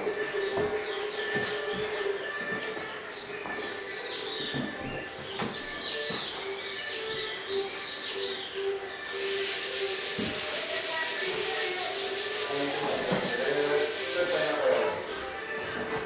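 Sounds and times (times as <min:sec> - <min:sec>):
abrasive sanding scrape: 0:09.2 - 0:15.1.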